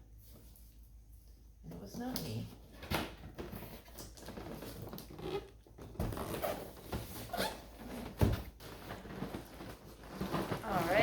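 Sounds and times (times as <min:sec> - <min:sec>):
cardboard scraping and rustling: 0:05.8 - 0:11.0.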